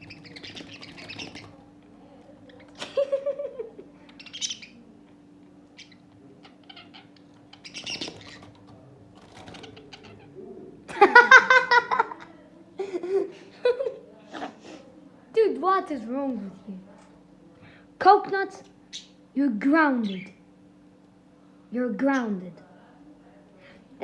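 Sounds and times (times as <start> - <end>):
budgies harsh calling: 0.0 - 1.7, 4.0 - 4.9, 5.6 - 10.9
budgies scratchy chirps: 0.0 - 1.7, 2.4 - 2.8, 4.0 - 4.9, 5.6 - 10.6
budgies wing flapping: 0.0 - 2.8, 4.0 - 4.8, 5.6 - 10.8.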